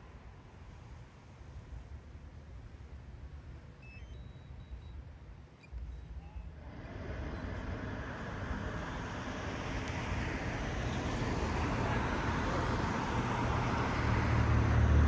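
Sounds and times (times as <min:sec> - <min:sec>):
rumble of passing vehicles: 0:06.6 - 0:15.0.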